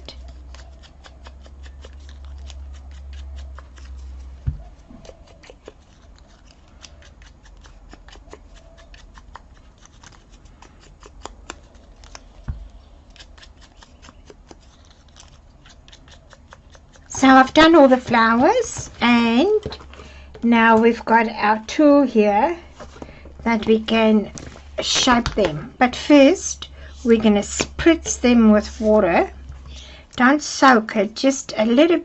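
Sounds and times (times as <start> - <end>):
sponge dauber clicking on paper: 0.1 - 19.8.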